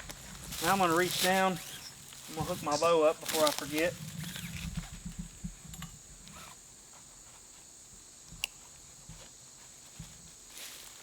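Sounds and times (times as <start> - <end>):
gear rustling: 0.0 - 4.9.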